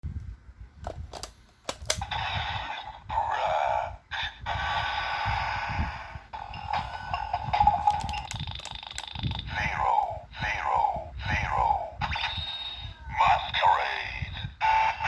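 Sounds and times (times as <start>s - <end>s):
plastic toy clicks: 1.1s - 2.0s, 7.8s - 9.4s.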